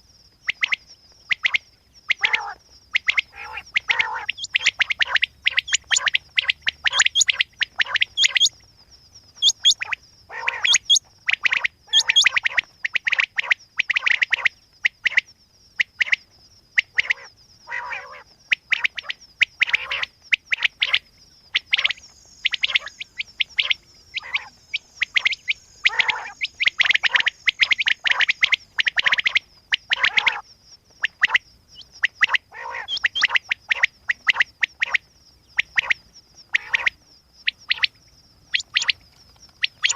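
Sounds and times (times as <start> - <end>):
quail calling: 0.5 - 8.6, 9.3 - 15.2, 16.8 - 30.4, 31.0 - 39.0, 39.6 - 39.9
thin steady high tone: 21.1 - 30.2.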